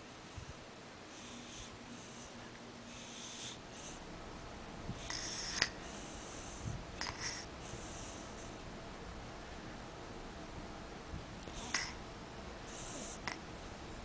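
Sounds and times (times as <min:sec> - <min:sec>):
snoring with hissing breaths: 0:01.1 - 0:04.0, 0:04.9 - 0:08.5, 0:11.5 - 0:12.0, 0:12.6 - 0:13.5.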